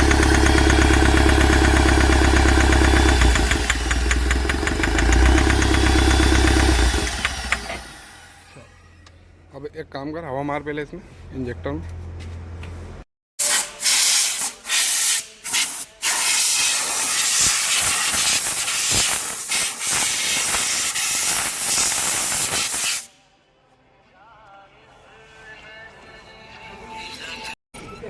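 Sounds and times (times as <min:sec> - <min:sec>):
compressed air blasts hissing: 0:13.4 - 0:23.1.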